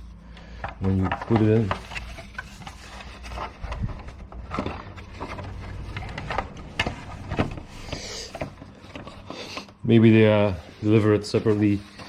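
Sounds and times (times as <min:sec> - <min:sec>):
plastic parts clicking and knocking: 0:00.3 - 0:09.8.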